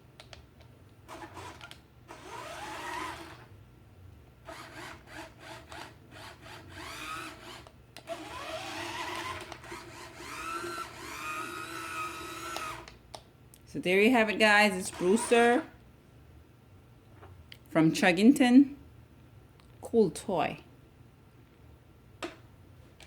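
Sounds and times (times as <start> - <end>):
toy train motor whine: 1.1 - 3.5, 4.5 - 12.9, 14.7 - 15.6.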